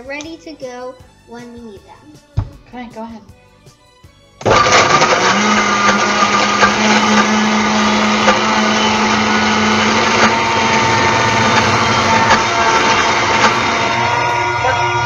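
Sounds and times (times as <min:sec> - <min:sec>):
blender whirring: 0:04.4 - 0:15.0.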